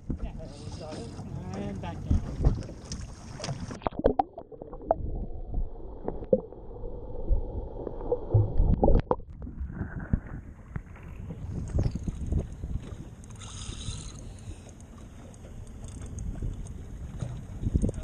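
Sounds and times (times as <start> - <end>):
muffled churning water underwater: 0.0 - 18.0.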